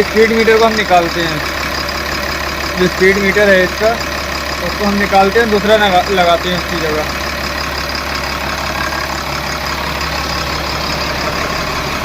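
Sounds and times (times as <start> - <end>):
bus diesel engine idling: 0.0 - 12.0.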